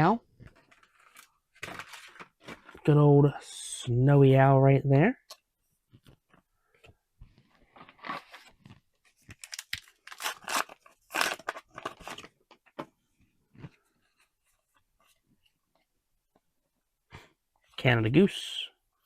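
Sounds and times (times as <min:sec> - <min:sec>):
foil wrapper crinkling and tearing: 0:09.2 - 0:12.3.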